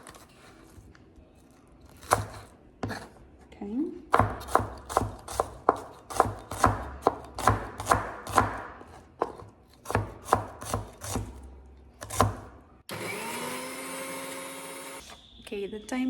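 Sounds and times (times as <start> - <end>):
knife chopping on cutting board: 1.9 - 3.1, 4.1 - 12.6.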